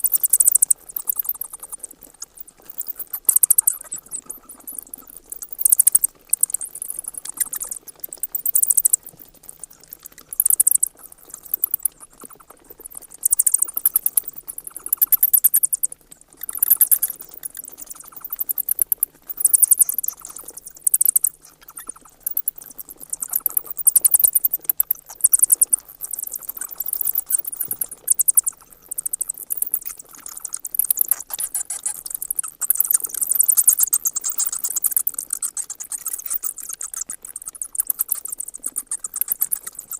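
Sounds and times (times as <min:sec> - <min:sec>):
bat calls high squeaky chirps: 0:02.8 - 0:09.0, 0:26.6 - 0:39.9.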